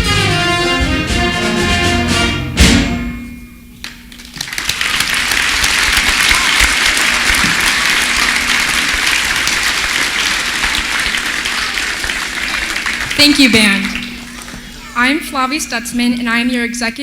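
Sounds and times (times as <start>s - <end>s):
band playing: 0.0s - 3.6s
audience applauding: 3.8s - 16.3s.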